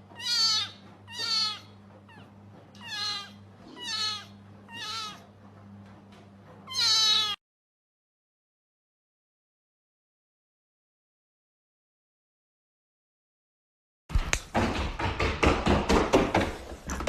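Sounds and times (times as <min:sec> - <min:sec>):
pet animal high-pitched calls: 0:00.1 - 0:05.3, 0:06.7 - 0:07.4.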